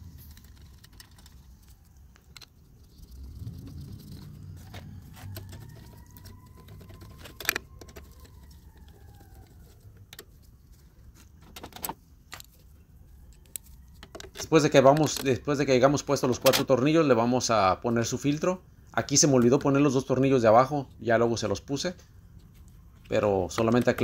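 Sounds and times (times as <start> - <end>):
faint vehicle hum: 0.0 - 16.8
metallic clicks of screws and parts: 6.6 - 8.4, 11.2 - 12.7, 13.3 - 15.3.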